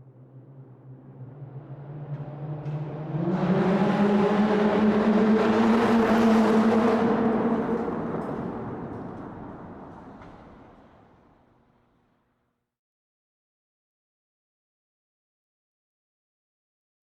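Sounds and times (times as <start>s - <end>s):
car engine speeding up: 0.8s - 10.0s.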